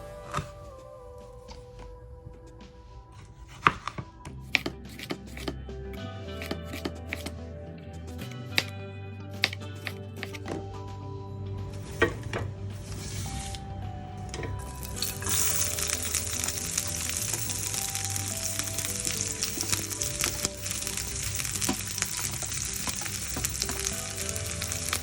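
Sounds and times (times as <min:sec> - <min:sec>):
background music with bass: 0:00.0 - 0:25.0
food sizzling in hot oil: 0:14.8 - 0:25.0.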